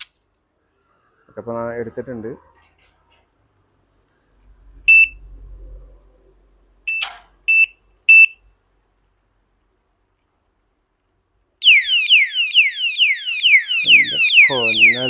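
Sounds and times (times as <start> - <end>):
padlock click: 6.9 - 7.3
alarm siren wailing: 11.6 - 15.0.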